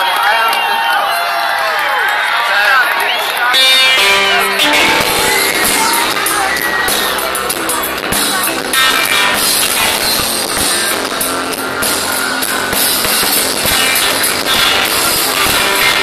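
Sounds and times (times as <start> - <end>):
distorted live rock band: 3.5 - 16.0
person singing: 3.6 - 10.7.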